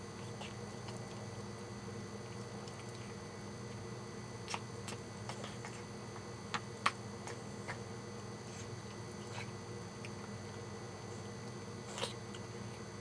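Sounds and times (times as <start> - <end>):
steady low hum: 0.0 - 13.0
pet eating clicks and smacks: 0.2 - 1.5, 2.2 - 7.9.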